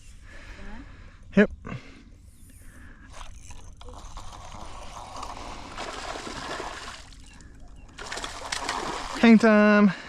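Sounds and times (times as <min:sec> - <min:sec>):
water splashing and trickling: 0:03.2 - 0:09.9.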